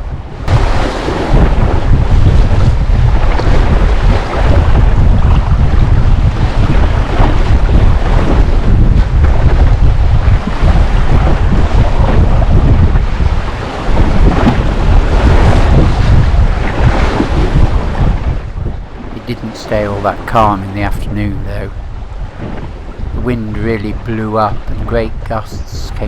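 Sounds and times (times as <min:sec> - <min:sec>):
water rushing along hull: 0:00.0 - 0:26.0
wind buffeting microphone: 0:00.0 - 0:26.0.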